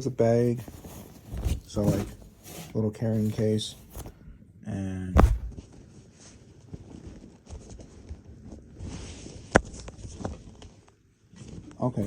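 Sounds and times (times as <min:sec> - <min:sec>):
rustling bag handling: 0:00.0 - 0:04.2, 0:05.2 - 0:05.7
sharp knock: 0:05.2 - 0:05.6.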